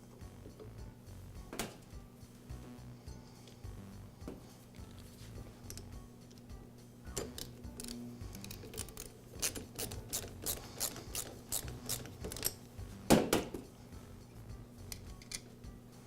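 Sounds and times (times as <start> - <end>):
hand tool clicking: 7.1 - 12.7.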